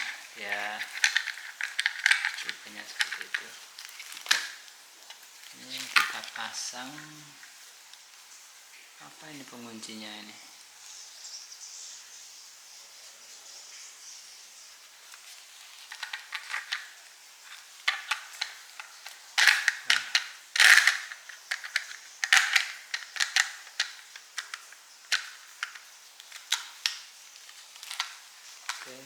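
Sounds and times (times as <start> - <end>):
hard plastic clicking: 0.0 - 4.6, 17.9 - 27.0
plastic scraping and rattling: 0.0 - 7.5, 15.0 - 29.0.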